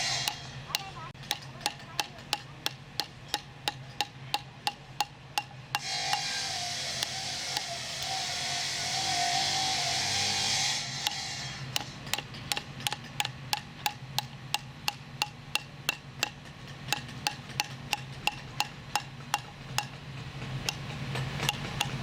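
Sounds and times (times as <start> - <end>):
low steady hum: 0.0 - 22.0
sharp ringing taps: 0.2 - 6.3, 11.8 - 20.0.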